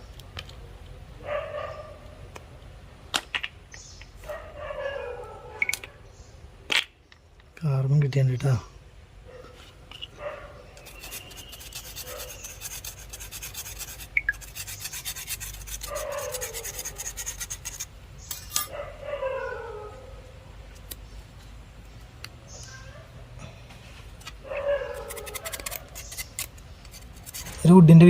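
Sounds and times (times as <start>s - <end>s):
hand scraping and rubbing: 9.4s - 18.8s, 23.7s - 28.0s.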